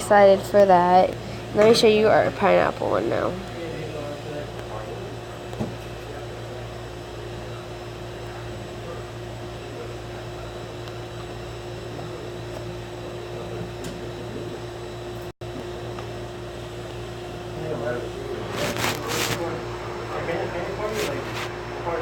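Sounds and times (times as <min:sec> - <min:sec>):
steady machine hum: 0:00.0 - 0:22.0.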